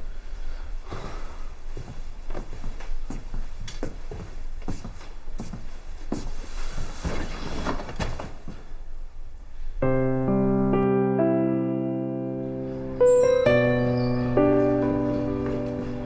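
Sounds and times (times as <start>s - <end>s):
slow piano music: 9.8s - 16.0s.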